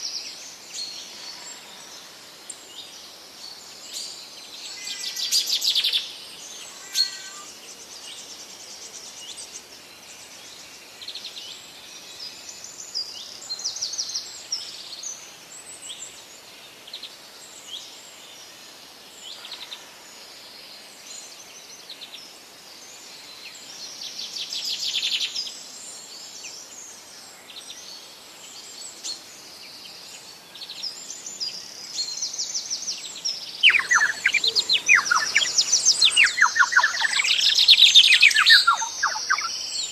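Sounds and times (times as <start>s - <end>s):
faint steady hiss: 0.0s - 39.9s
birds chirping and trilling: 4.7s - 8.3s, 30.6s - 39.9s
falling whistled bird notes: 33.6s - 39.5s.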